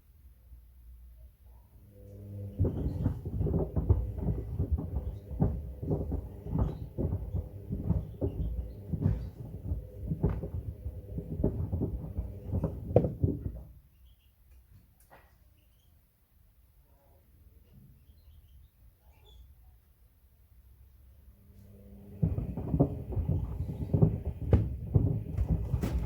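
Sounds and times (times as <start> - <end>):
washing machine motor hum: 1.7 - 13.9, 21.2 - 26.0
wood knocking in washing machine drum: 2.5 - 13.9, 22.1 - 26.0.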